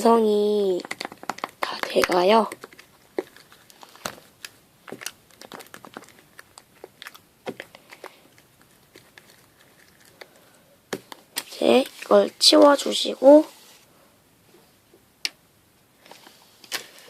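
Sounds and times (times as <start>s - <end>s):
sticky slime clicks and crackles: 0.8s - 10.2s.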